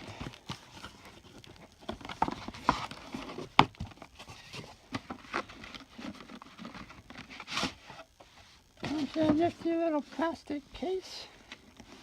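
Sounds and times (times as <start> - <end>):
packaging handling clicks and rustling: 0.0 - 8.0.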